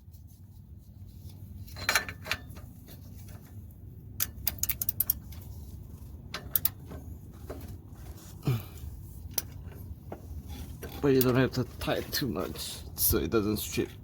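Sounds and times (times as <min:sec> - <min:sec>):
ratchet wrench clicking: 0:04.2 - 0:05.2.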